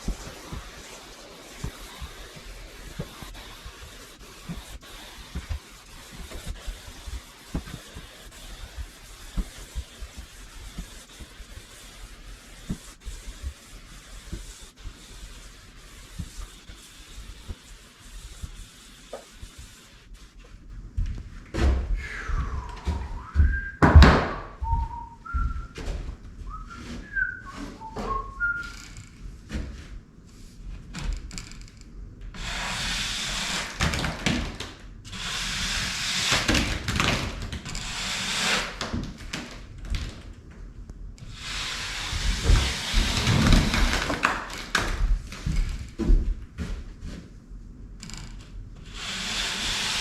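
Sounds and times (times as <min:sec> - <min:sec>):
ceiling texture scraping: 0:00.0 - 0:30.7
person whistling: 0:22.0 - 0:23.9, 0:24.5 - 0:25.8, 0:26.5 - 0:28.8
knocks and thunks: 0:22.8 - 0:25.9.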